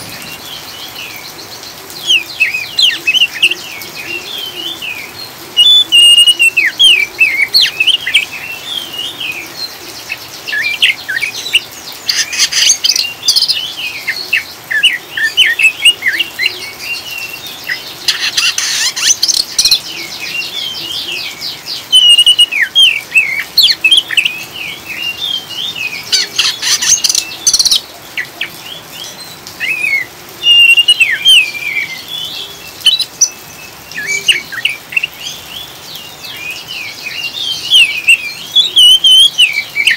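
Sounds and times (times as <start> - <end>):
bird whistled song phrases: 5.6 - 8.3, 21.9 - 24.4, 29.6 - 32.3.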